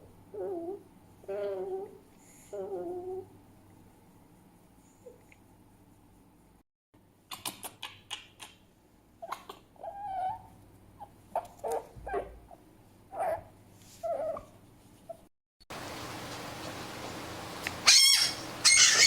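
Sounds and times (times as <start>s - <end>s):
fox yips and whines: 9.2s - 10.5s, 11.4s - 12.5s, 13.1s - 14.5s, 17.8s - 19.0s.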